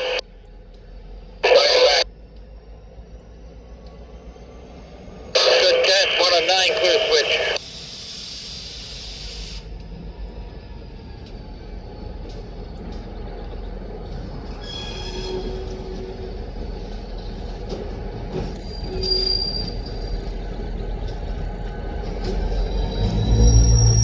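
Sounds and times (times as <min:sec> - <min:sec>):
freight train rumbling: 0:00.0 - 0:24.0
train wheels squealing: 0:07.6 - 0:24.0.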